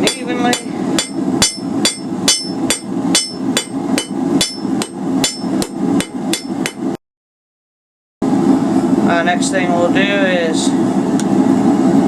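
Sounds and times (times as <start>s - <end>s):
hammer striking steel on anvil: 0.0s - 7.0s.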